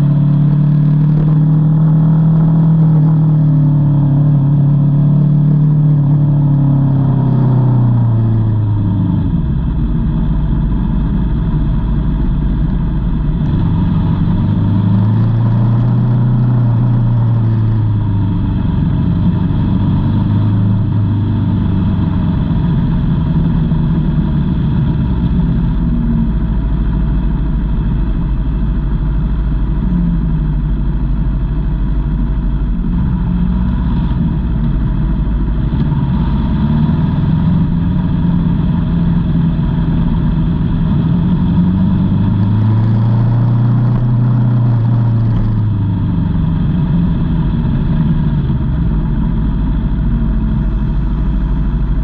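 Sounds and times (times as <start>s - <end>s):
motorcycle engine at low revs: 0.0s - 52.0s.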